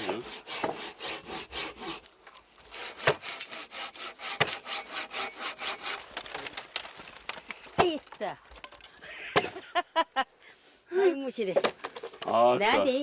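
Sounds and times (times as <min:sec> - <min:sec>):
hand saw cutting wood: 0:00.0 - 0:06.5
sharp knocks: 0:04.3 - 0:04.8.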